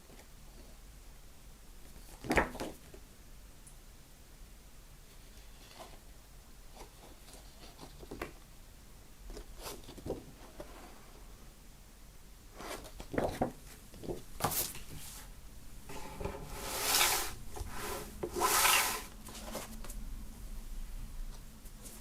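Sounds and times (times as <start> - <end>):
cardboard and paper rubbing: 15.9 - 19.8.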